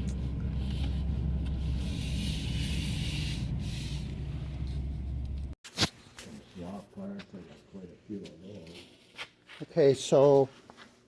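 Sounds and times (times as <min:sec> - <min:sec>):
vehicle engine humming: 0:00.0 - 0:05.6.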